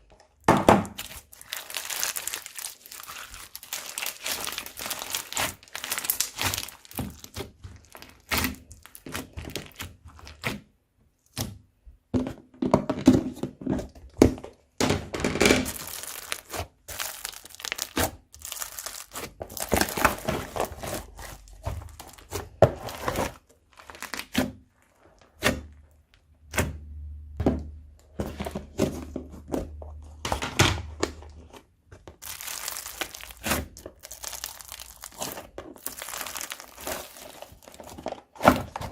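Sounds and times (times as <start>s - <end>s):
hands squishing crunchy slime: 0.7s - 11.6s, 15.6s - 27.0s, 31.0s - 38.9s.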